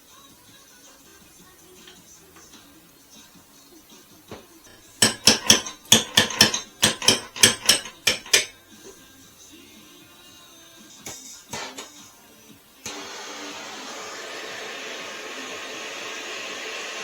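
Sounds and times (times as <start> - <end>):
metal striking metal clanks: 4.7 - 8.6.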